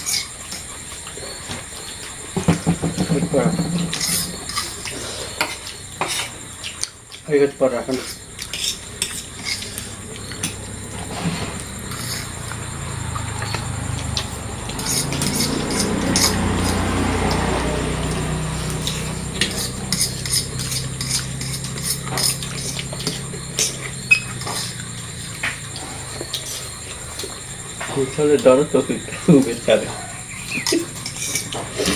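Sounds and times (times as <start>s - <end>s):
cutlery clinking on plates: 14.7s - 17.5s, 18.8s - 24.8s, 30.5s - 31.9s.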